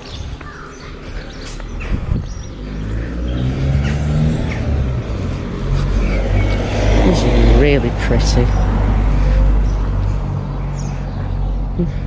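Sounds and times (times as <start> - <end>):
car engine hum approaching: 0.0 - 12.0.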